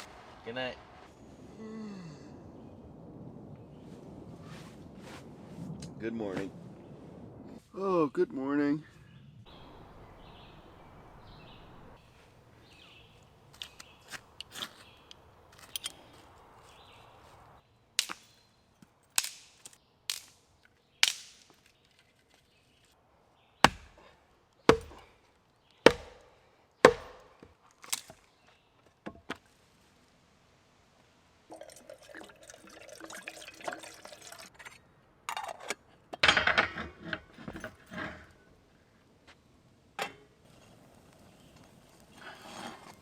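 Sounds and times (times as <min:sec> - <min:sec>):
sharp knocks: 0:26.9 - 0:27.4.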